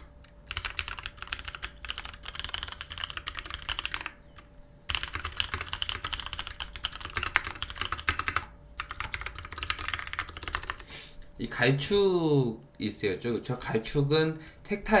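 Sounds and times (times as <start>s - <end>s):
rapid keyboard typing: 0.0s - 10.9s.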